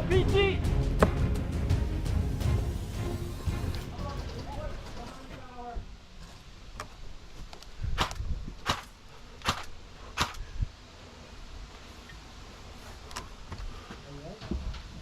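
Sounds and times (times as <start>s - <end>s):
airsoft gun pops: 8.0s - 10.4s.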